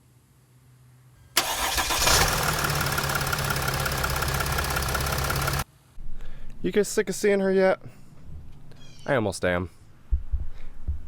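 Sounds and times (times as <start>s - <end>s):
engine starting and running: 1.4s - 5.6s.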